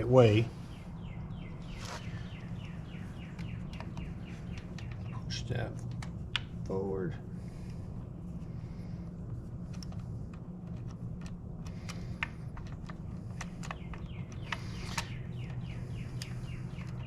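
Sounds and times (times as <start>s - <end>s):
low steady hum: 0.0s - 17.0s
bird chirping: 0.1s - 5.7s, 13.4s - 17.0s
small metallic clicks and taps: 9.6s - 17.0s.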